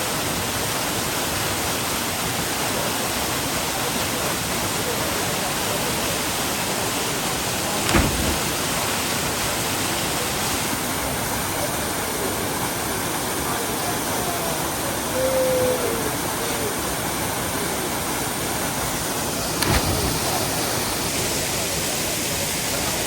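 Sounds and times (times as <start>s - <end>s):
faint voices: 3.8s - 23.0s
waterfall roaring: 7.6s - 9.5s
sharp thump: 7.8s - 9.0s.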